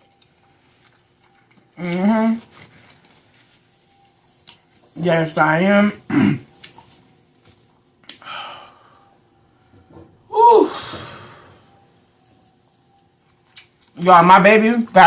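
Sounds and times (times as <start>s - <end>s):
breath: 8.2s - 9.2s
woman sighing: 10.3s - 11.6s.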